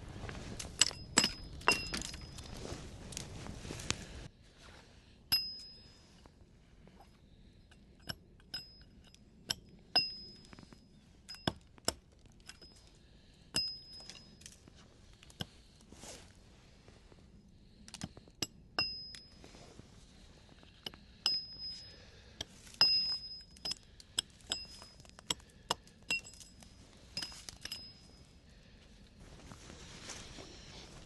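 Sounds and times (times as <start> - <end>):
sharp metallic clinks: 0.8 - 2.5, 5.3 - 6.0, 21.2 - 22.0, 22.8 - 28.4.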